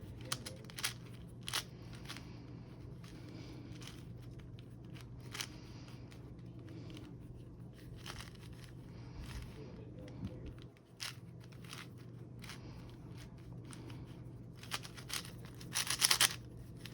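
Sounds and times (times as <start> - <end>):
steady low hum: 0.0 - 16.9
plastic cube layers clicking: 14.6 - 16.4.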